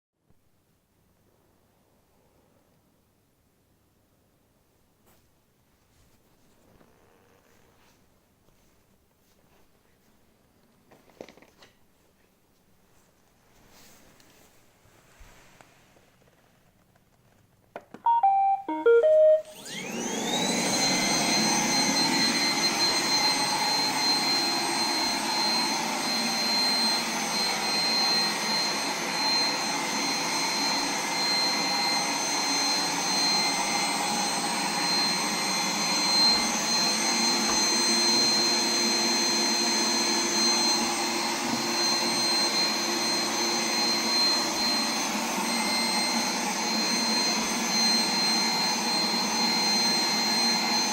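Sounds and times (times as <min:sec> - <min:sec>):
robot vacuum tones: 0:18.0 - 0:50.9
vacuum motor whine: 0:18.2 - 0:50.9.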